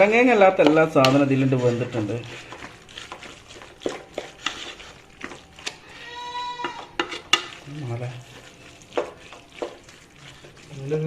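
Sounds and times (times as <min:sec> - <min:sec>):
light frying sizzle: 0:00.0 - 0:11.0
spoon scraping a pan: 0:00.0 - 0:11.0.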